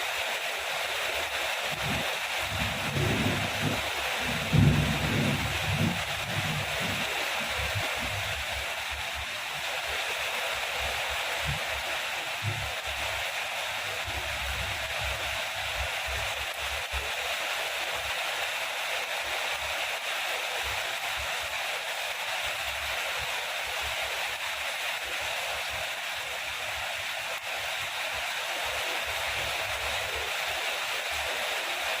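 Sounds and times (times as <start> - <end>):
heavy rain: 0.0 - 32.0
low thunder rumble: 1.8 - 7.0.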